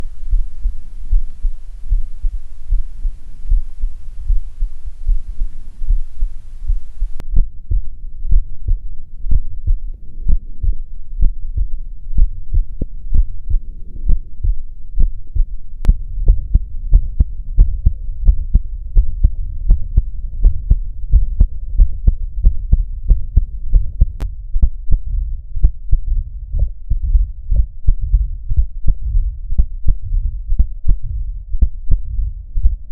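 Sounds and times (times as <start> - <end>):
faint hiss: 0.0 - 7.2
heartbeats: 0.0 - 32.9.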